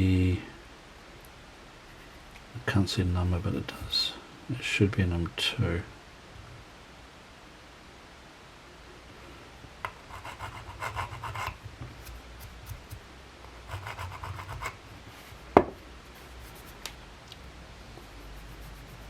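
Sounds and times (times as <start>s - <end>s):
rubbing on metal: 9.9s - 12.5s, 13.5s - 15.5s, 18.0s - 19.0s.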